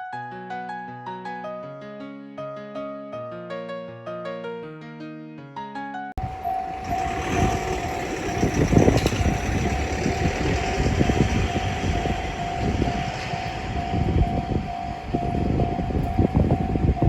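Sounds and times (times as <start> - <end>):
level crossing bell ringing: 6.2 - 17.0
train rumbling and clattering: 6.2 - 17.0.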